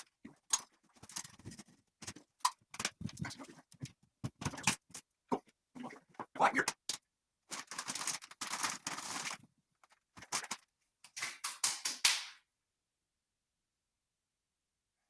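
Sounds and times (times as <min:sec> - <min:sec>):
scrapes and knocks of hand work: 0:00.0 - 0:05.1.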